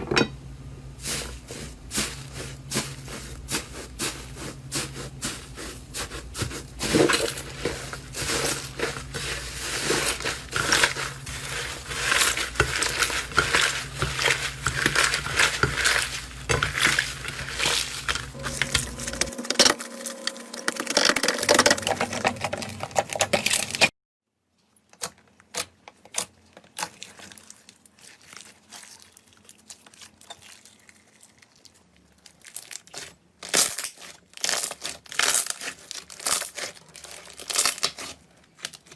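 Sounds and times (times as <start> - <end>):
slime squeezed crackling and popping: 25.5 - 38.9.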